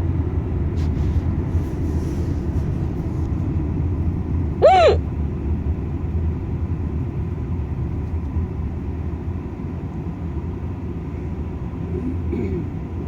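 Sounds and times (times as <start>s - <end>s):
road and engine rumble inside car: 0.0s - 13.0s
faint short vocal sound: 4.6s - 5.0s.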